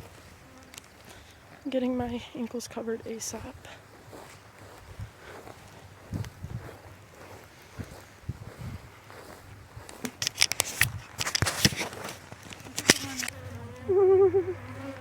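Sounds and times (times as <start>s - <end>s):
sharp clicks and scrapes: 10.0s - 13.4s
bees buzzing: 12.6s - 15.0s.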